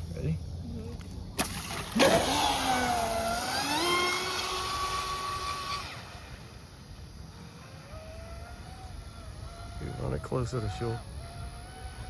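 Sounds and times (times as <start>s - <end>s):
electric rc boat motor whining: 1.9s - 6.6s, 7.3s - 12.0s.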